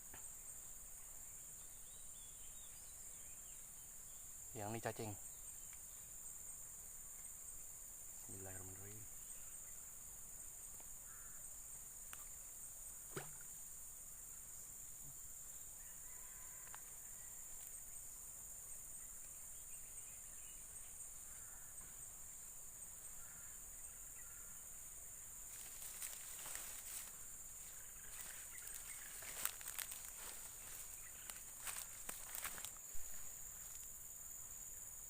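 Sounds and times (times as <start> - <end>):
insects chirring: 0.0 - 35.0.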